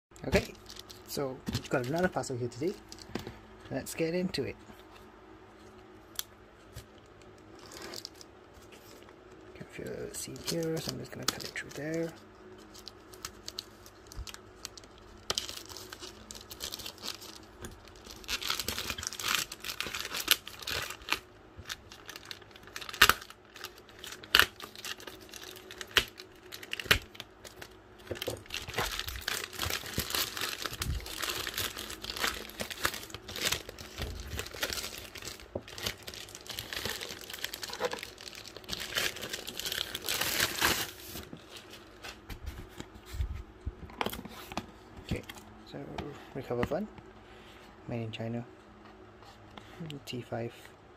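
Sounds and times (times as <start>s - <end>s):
plastic wrap crinkling and tearing: 0.3s - 3.2s, 7.5s - 9.0s, 9.8s - 42.3s.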